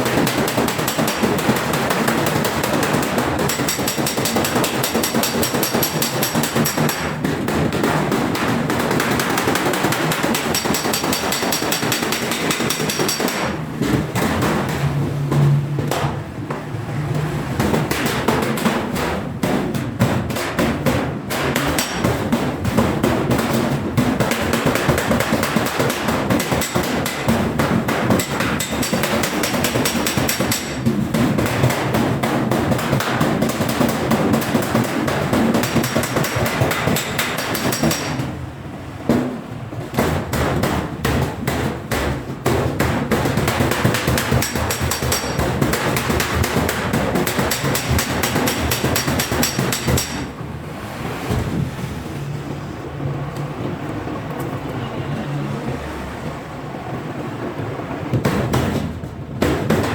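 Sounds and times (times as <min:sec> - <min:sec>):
hammer striking sheet steel: 0:00.0 - 0:51.6, 0:58.1 - 0:59.9.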